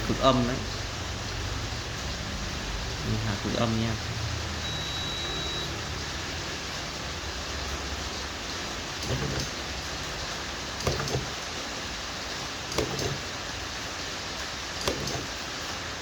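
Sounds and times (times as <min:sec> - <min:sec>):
steady hiss: 0:00.0 - 0:16.0
spot welder snaps with hum: 0:12.7 - 0:13.3, 0:14.8 - 0:15.4.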